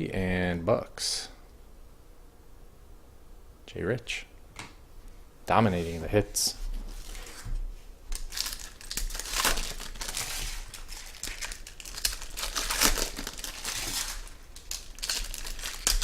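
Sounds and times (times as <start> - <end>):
plastic wrapping crinkling: 8.1 - 16.0.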